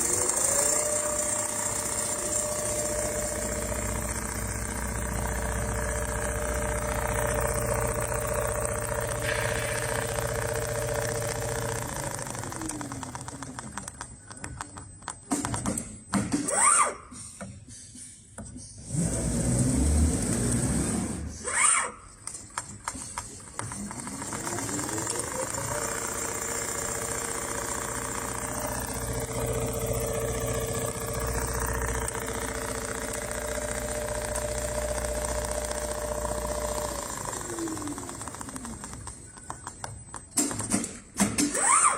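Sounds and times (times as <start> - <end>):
sewing machine winding down: 0.0 - 14.6, 18.8 - 41.9
sharp clicks: 3.6 - 15.8, 22.2 - 41.5.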